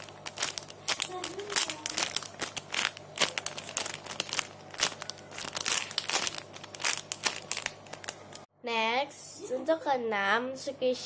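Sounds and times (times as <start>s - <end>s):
packaging crinkling and crackling: 0.0s - 8.5s.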